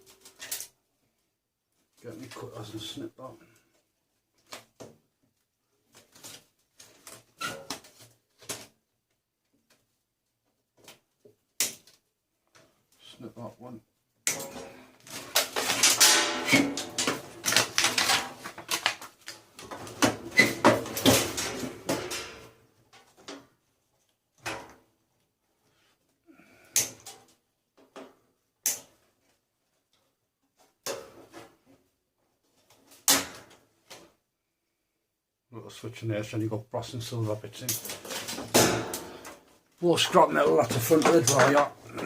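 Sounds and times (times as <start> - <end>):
small metal and plastic parts clattering: 14.3 - 24.7, 40.4 - 42.0.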